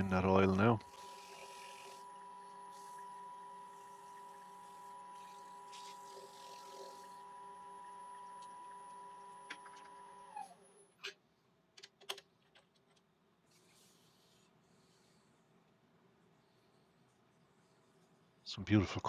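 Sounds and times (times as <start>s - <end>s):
wood lathe motor whining: 0.0s - 10.8s.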